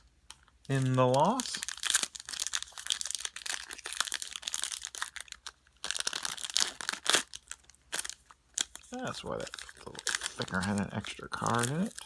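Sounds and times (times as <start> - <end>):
card pack wrapper crinkling: 0.0 - 12.0.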